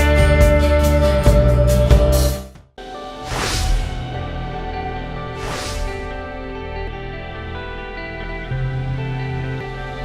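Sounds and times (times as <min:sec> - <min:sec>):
guitar-led background music: 0:00.0 - 0:10.0.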